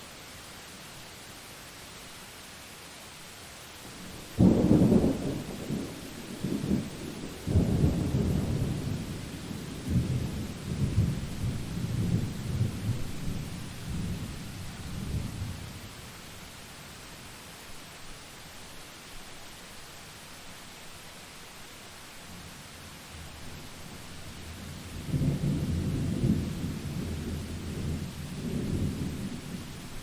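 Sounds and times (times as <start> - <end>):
steady hiss: 0.0 - 30.0
thunder crack and rolling rumble: 4.3 - 15.6, 24.9 - 29.8.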